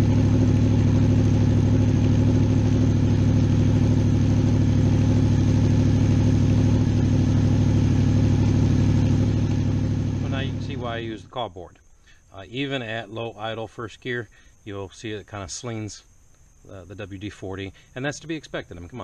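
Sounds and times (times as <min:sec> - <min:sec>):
motorcycle engine idling: 0:00.0 - 0:12.3.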